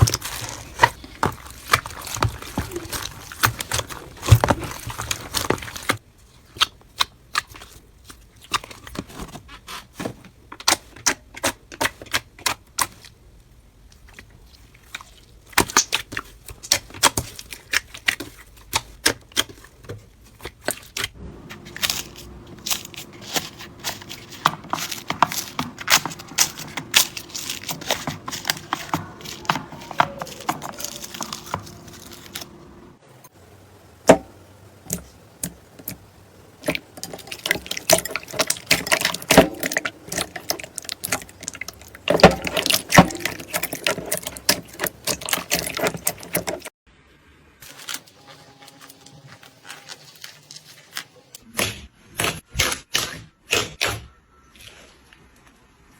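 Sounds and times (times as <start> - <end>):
slime crackling and popping: 0.0 - 9.8, 14.0 - 32.6, 34.0 - 46.7.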